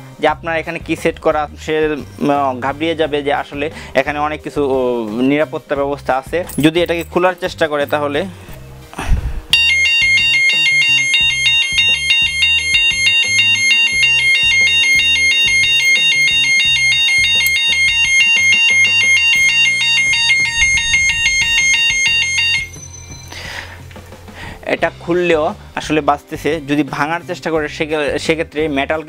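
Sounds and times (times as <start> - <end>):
electronic horn warbling alarm: 9.6 - 23.2.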